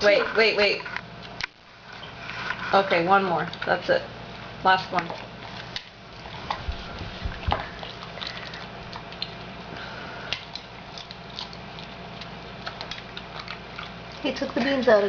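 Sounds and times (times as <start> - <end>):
dog chewing pod: 4.9 - 14.7
low thumps: 6.5 - 7.7.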